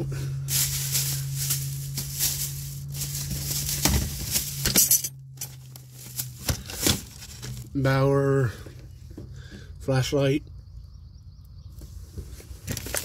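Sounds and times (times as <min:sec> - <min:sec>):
steady low hum: 0:00.0 - 0:13.0
packaging rustling and rattling: 0:00.5 - 0:07.6, 0:12.6 - 0:13.0.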